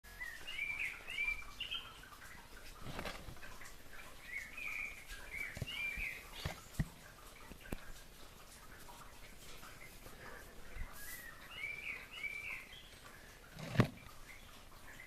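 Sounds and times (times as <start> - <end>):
songbird warbling: 0.1 - 3.1, 3.9 - 7.8, 10.6 - 15.0.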